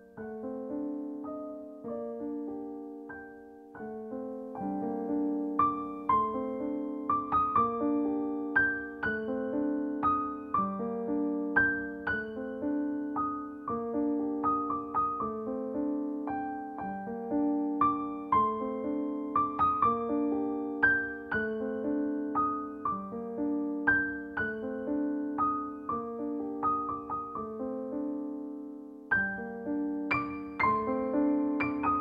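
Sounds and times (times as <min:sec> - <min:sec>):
gentle piano music: 0:00.0 - 0:32.0.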